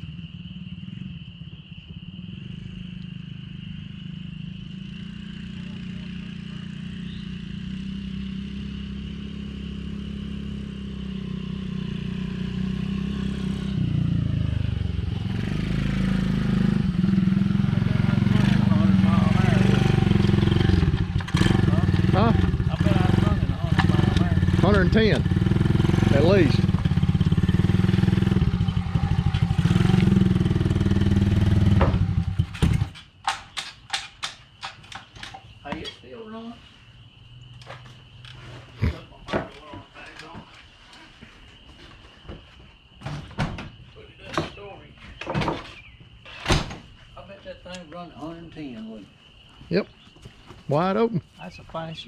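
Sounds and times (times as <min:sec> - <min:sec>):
small vehicle engine running: 0:02.5 - 0:33.0.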